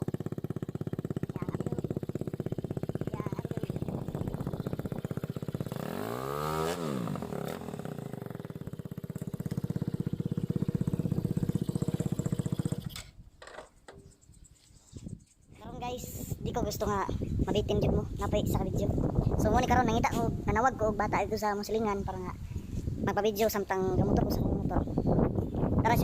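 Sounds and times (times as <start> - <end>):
motorcycle engine idling and revving: 0.0 - 14.5.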